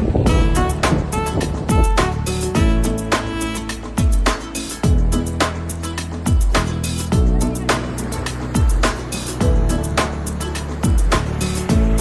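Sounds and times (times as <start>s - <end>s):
deep bass kicks: 0.0s - 3.0s, 4.8s - 5.3s, 6.3s - 7.6s, 8.6s - 10.0s, 10.8s - 12.0s
crisp high percussion hits: 0.2s - 12.0s.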